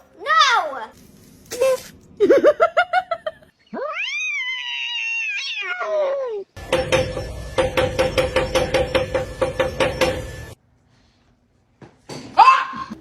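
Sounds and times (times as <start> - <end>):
knocks: 6.6 - 10.6.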